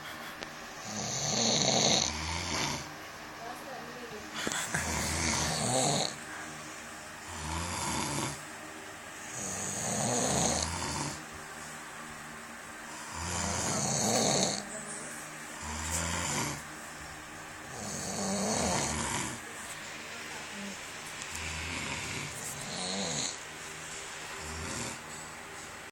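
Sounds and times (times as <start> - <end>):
loud rasping snores: 0.8 - 2.9, 4.7 - 6.2, 7.2 - 8.4, 9.2 - 11.2, 12.9 - 14.7, 15.6 - 16.6, 17.7 - 19.4, 21.3 - 23.4, 24.4 - 25.2
quiet breathing: 4.4 - 8.4.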